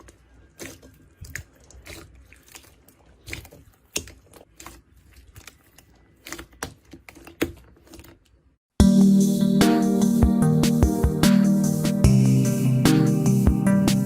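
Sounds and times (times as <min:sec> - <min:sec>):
slime squeezed by hand: 0:00.0 - 0:08.0.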